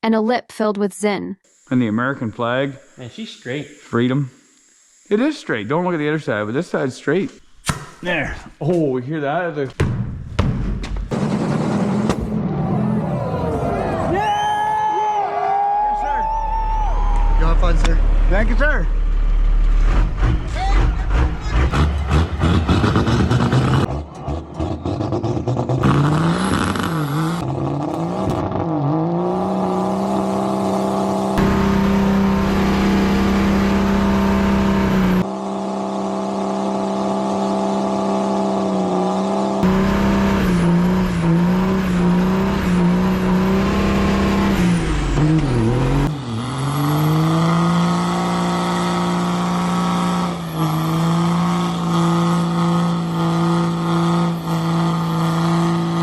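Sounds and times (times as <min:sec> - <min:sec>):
car engine revving hard: 0:19.4 - 0:56.0.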